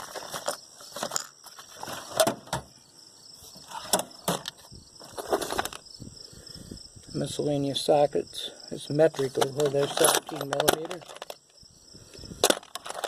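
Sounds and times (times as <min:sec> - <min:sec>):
metal tools clattering in toolbox: 0:00.0 - 0:02.3, 0:09.2 - 0:11.4.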